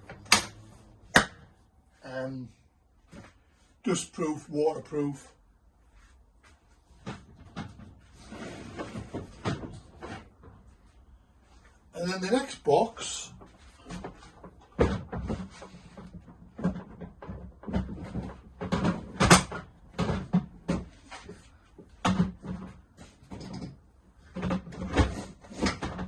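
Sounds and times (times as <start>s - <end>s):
toolbox knocks clunks and clicks: 13.8s - 26.0s.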